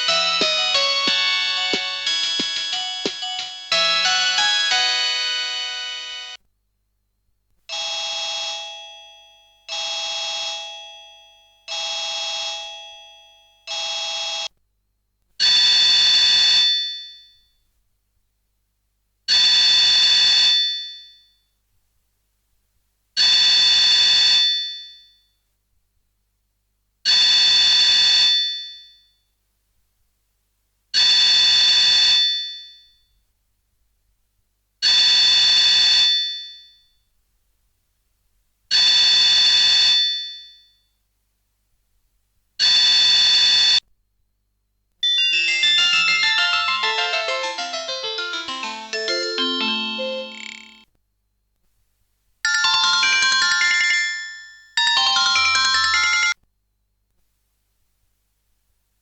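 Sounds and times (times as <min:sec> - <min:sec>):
electronic ringtone chime: 0:00.0 - 0:06.2, 0:45.0 - 0:50.8, 0:52.5 - 0:56.4
higher alert tone ringing: 0:45.2 - 0:50.8.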